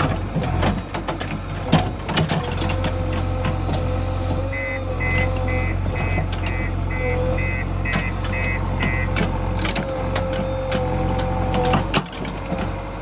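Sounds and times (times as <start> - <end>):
diesel engine running: 0.0 - 13.0
reversing alarm beeping: 4.5 - 9.3
metallic knocks: 4.5 - 12.7.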